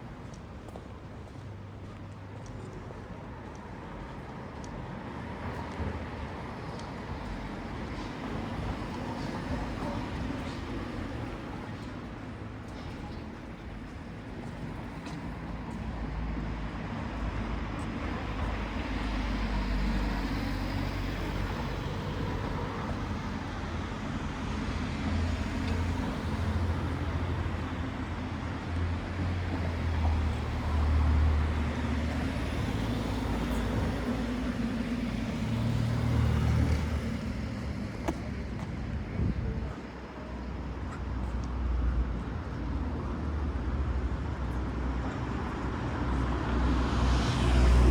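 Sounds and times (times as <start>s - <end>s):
cars passing: 12.9s - 39.7s, 43.1s - 47.9s.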